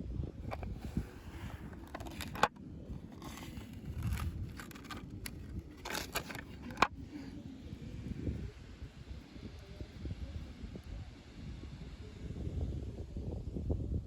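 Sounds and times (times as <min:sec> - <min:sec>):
packaging scraping and rustling: 0:00.4 - 0:07.3.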